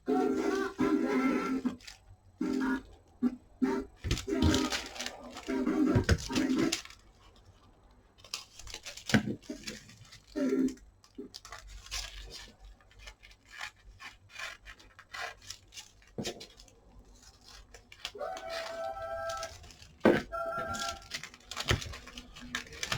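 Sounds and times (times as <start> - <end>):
fabric rustling: 3.8 - 22.9
scissors snipping fabric: 11.2 - 20.0.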